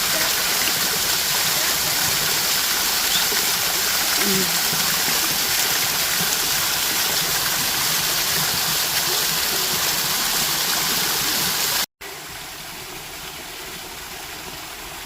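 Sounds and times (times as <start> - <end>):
waterfall rushing: 0.0 - 11.9.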